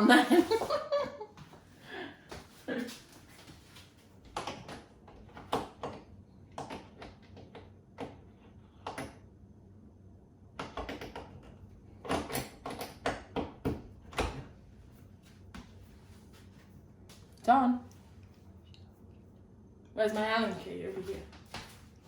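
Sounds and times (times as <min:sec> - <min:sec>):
hardware clicking and knocking: 0:10.6 - 0:14.5.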